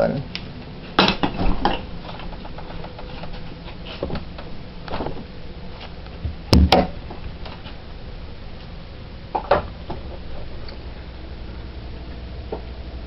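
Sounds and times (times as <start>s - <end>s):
loud sharp knocks: 6.5s - 7.0s.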